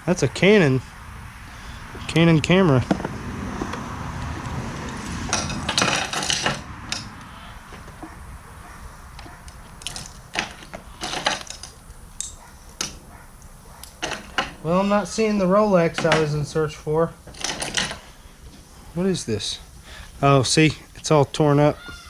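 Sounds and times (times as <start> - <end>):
knocks and clicks: 2.8 - 8.2
objects clattering: 4.8 - 8.2, 9.1 - 13.2, 13.8 - 14.8, 17.2 - 18.8
rummaging through junk box: 9.9 - 11.8.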